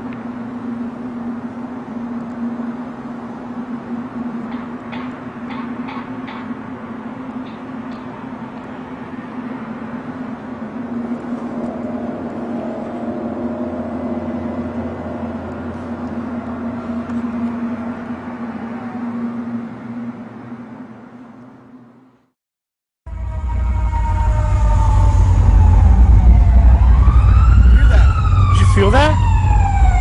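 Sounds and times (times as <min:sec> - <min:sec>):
low droning hum: 0:00.0 - 0:21.8, 0:23.1 - 0:30.0
higher droning note: 0:10.2 - 0:19.4, 0:23.1 - 0:30.0
deep rumble: 0:10.5 - 0:18.4, 0:23.1 - 0:30.0.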